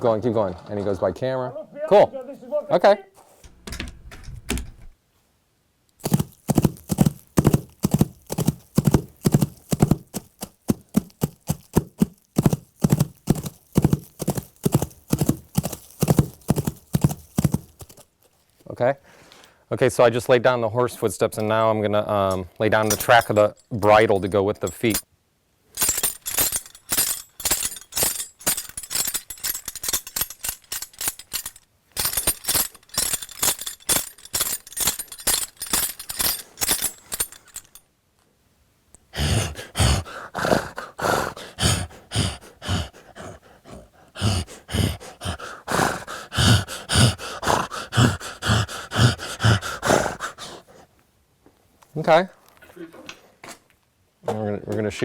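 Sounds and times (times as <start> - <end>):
low hoof-like thuds: 6.0 - 18.0
bridle metal jingling: 6.0 - 18.2, 22.7 - 25.1, 25.8 - 37.9, 39.2 - 50.7.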